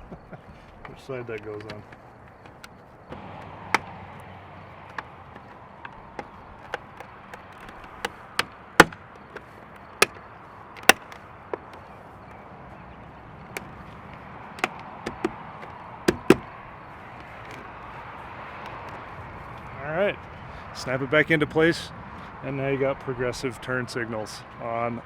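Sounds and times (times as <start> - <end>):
plastic cover clicks and taps: 8.8 - 9.0, 10.8 - 11.2, 14.6 - 15.3, 16.1 - 16.4.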